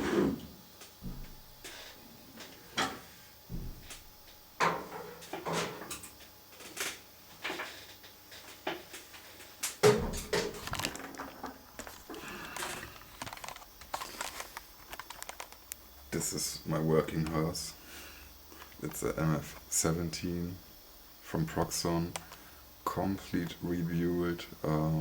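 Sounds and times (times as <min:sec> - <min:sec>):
objects knocking and clattering on workbench: 0:02.4 - 0:04.0, 0:04.6 - 0:15.6.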